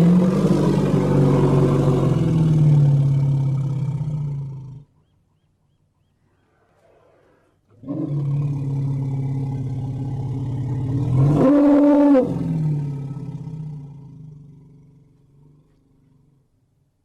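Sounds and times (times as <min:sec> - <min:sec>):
elephant roaring: 0:00.0 - 0:04.8, 0:06.4 - 0:13.8.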